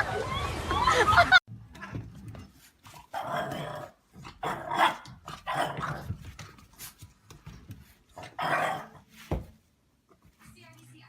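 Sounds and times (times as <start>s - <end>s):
dog barking and whining: 3.1s - 6.1s, 8.2s - 9.0s.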